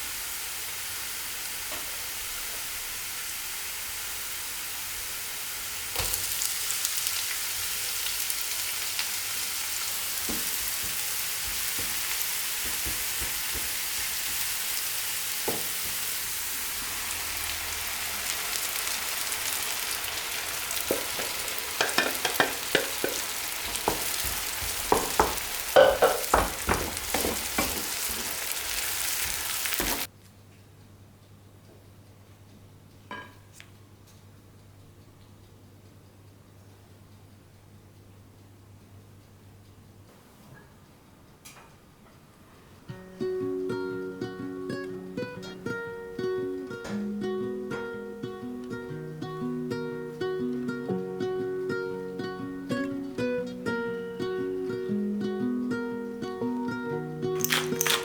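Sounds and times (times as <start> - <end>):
food sizzling in a pan: 0.0 - 30.1, 57.3 - 58.0.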